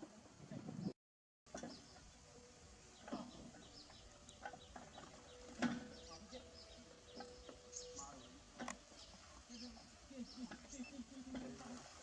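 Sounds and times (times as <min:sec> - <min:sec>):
faint outdoor ambience: 0:00.0 - 0:00.9, 0:01.5 - 0:12.0
high bird chirps: 0:02.9 - 0:11.1.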